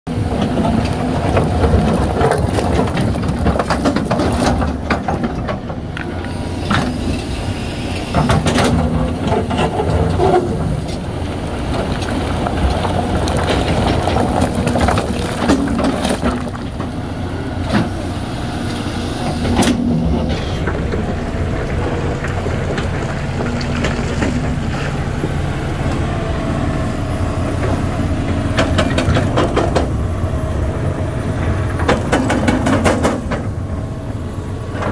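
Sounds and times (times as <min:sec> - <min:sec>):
excavator diesel engine running: 0:00.1 - 0:34.9
sharp knocks and clanks: 0:08.1 - 0:10.7, 0:28.6 - 0:30.0, 0:31.8 - 0:33.6.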